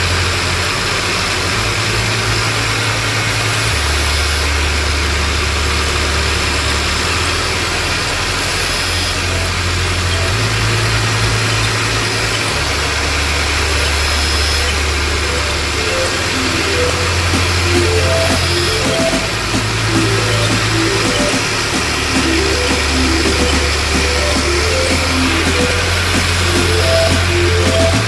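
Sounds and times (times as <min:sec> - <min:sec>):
music with deep bass notes: 0:12.6 - 0:28.0.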